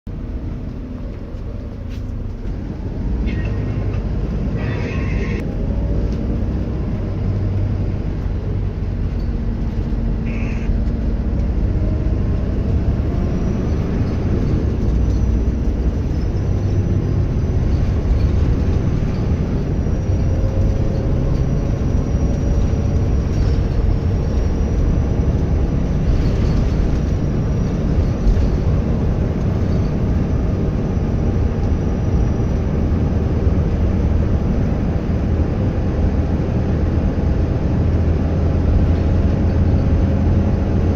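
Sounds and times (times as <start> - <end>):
bus engine and road rumble: 0.0 - 40.9
turbocharger whistle: 10.2 - 10.7.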